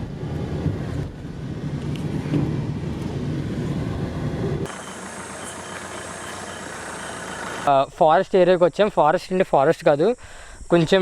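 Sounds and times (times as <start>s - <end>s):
vehicle engine rumbling: 0.0s - 7.7s
steady hum with high whine: 0.0s - 8.6s.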